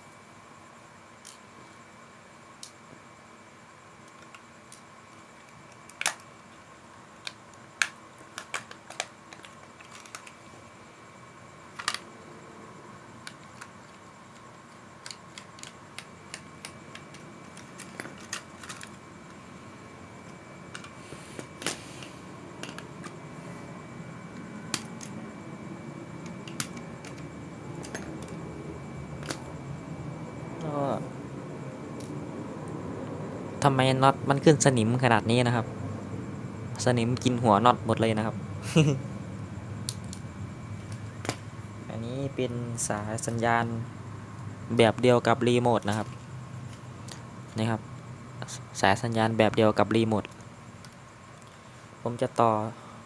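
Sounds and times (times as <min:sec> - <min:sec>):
faint high whine: 0:00.0 - 0:53.0
plastic toy clicks and taps: 0:05.8 - 0:06.2.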